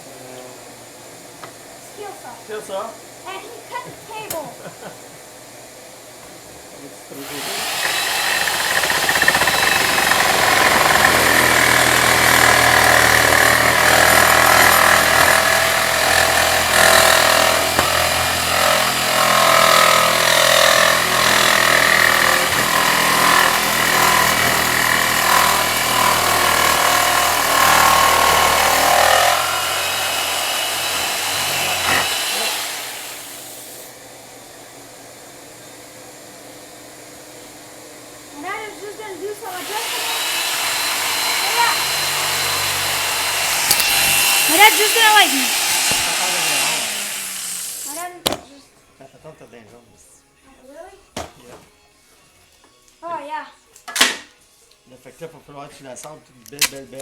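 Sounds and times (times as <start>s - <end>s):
electric jigsaw cutting wood: 7.2s - 34.0s, 38.4s - 48.1s.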